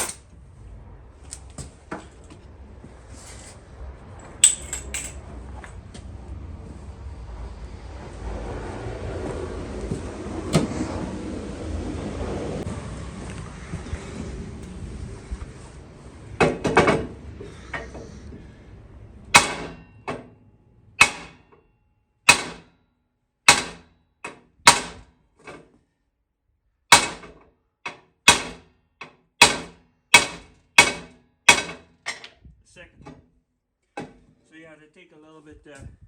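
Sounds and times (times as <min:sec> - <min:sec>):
hammer striking metal: 0:19.3 - 0:20.3, 0:21.0 - 0:21.4, 0:22.3 - 0:22.7, 0:23.5 - 0:23.9, 0:24.7 - 0:25.0, 0:26.9 - 0:27.2, 0:27.9 - 0:28.6, 0:29.4 - 0:32.2.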